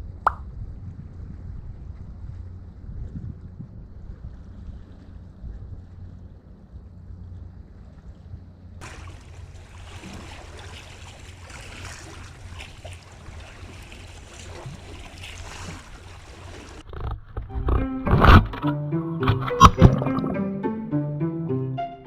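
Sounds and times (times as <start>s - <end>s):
wind buffeting microphone: 0.0s - 18.6s
sea waves washing: 8.8s - 16.9s.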